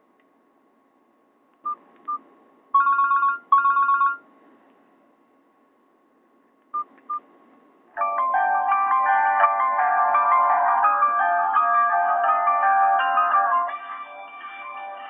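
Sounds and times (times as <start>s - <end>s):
phone ringtone trilling beeps: 2.8s - 4.2s.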